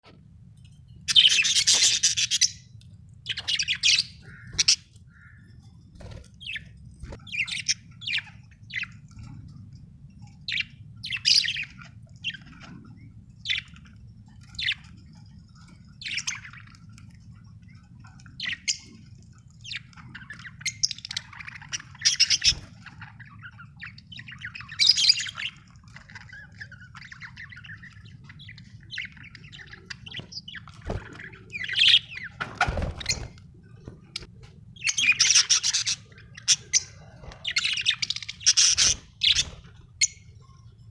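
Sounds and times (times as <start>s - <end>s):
faint low hum: 0.0s - 40.9s
budgerigar chirping and warbling: 34.8s - 40.2s.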